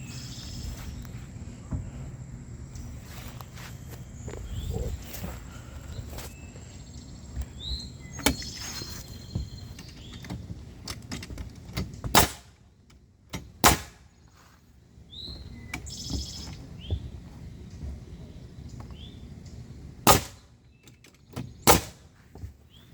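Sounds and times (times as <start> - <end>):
bird chirping: 0.0 - 2.1, 2.7 - 10.9, 15.0 - 20.0
knocks and clicks of building work: 8.2 - 14.0, 15.3 - 18.1, 20.1 - 22.7
loud sharp bangs: 12.1 - 12.5, 13.6 - 14.0, 20.0 - 20.5.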